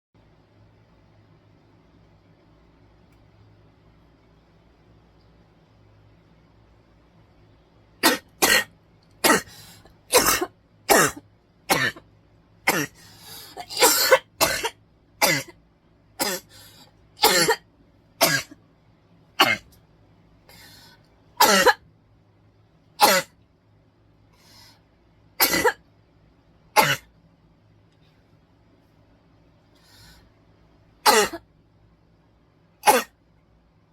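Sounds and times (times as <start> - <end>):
person coughing: 8.0 - 12.0, 12.7 - 15.6, 16.2 - 16.5, 17.2 - 17.6, 21.4 - 21.8, 25.4 - 25.8, 31.0 - 31.5, 32.8 - 33.2
noisy breath: 9.4 - 10.0, 13.0 - 13.6, 16.5 - 17.1, 20.4 - 21.2, 24.2 - 25.0, 29.7 - 30.5.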